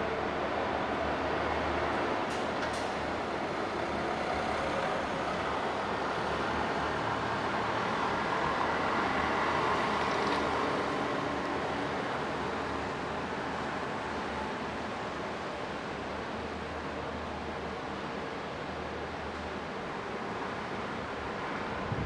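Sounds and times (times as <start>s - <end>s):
gusty wind: 20.5s - 22.0s.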